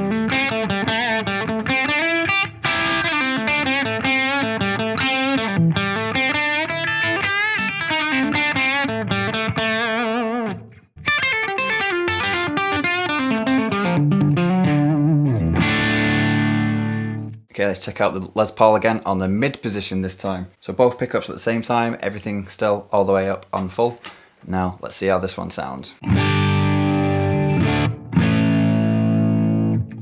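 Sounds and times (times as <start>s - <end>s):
distorted electric guitar lead: 0.0s - 17.4s, 26.0s - 30.0s.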